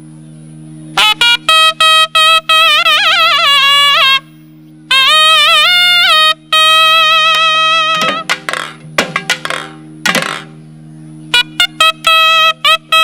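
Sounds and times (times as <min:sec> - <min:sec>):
reed wind instrument melody: 0:00.9 - 0:08.8, 0:11.1 - 0:13.0.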